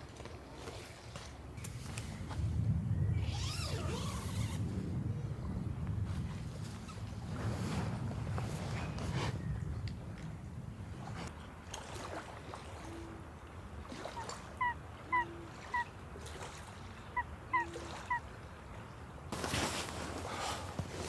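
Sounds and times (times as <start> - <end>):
rustling: 19.3 - 21.0.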